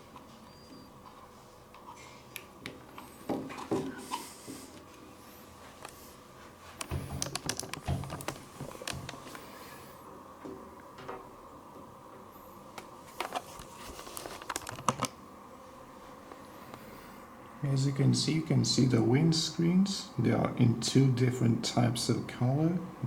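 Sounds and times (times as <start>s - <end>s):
plastic parts clicking and rustling: 6.8s - 9.2s, 13.2s - 15.1s.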